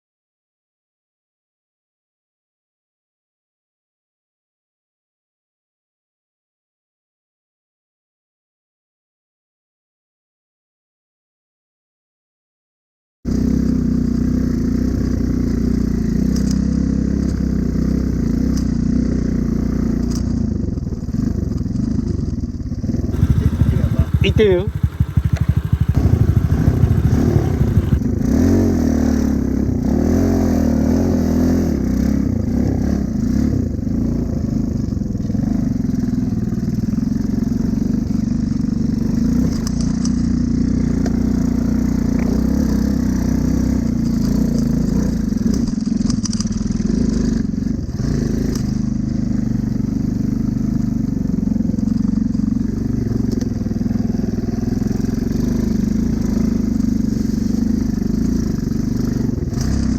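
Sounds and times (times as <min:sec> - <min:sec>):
small motorcycle engine running: 0:13.3 - 0:59.9.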